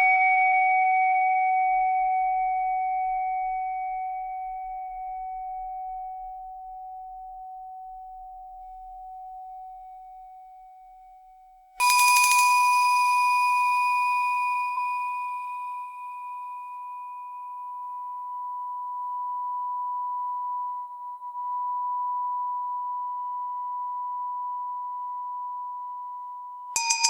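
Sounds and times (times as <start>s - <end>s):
boat bell ringing: 11.8s - 17.1s, 26.8s - 27.0s.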